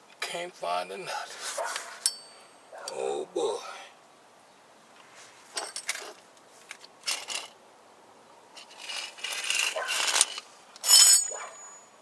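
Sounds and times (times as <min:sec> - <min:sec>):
metal tools clinking: 0:02.0 - 0:02.6, 0:05.5 - 0:07.5, 0:08.6 - 0:11.9
metal rattling and scraping: 0:05.5 - 0:07.5, 0:08.6 - 0:11.6.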